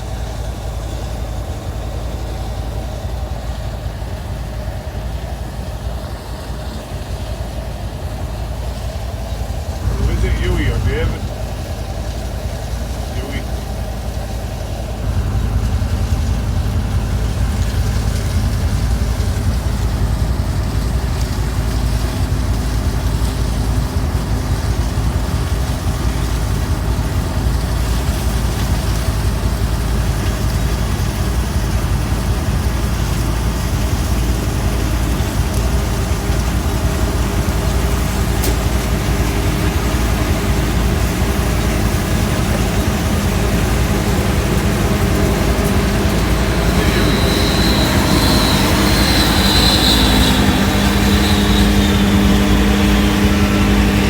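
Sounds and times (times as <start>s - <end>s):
heavy machinery engine running: 0.0s - 54.0s.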